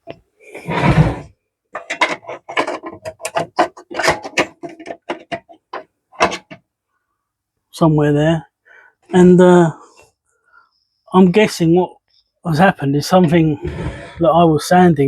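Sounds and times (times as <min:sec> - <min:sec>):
plastic scraping rustle: 0:00.6 - 0:06.5
plastic clicks and rattles: 0:01.8 - 0:06.6.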